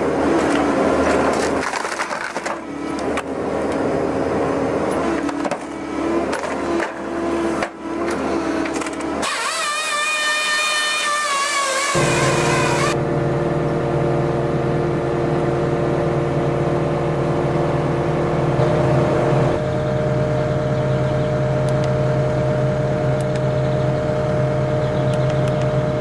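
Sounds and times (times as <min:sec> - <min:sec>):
wood cracking and splintering: 0:00.4 - 0:03.3
machine humming: 0:08.3 - 0:26.0
steady multi-pitched whine: 0:11.8 - 0:26.0.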